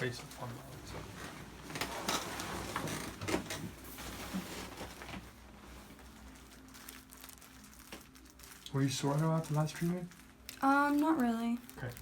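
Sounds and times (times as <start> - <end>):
rustling on padded table: 0.4 - 7.3.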